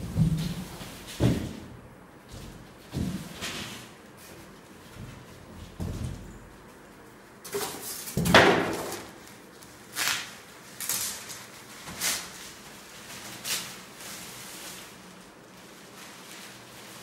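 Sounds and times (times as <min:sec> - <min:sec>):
packaging swishing rustles: 0:09.1 - 0:17.0
packaging scraping rustle: 0:09.2 - 0:17.0.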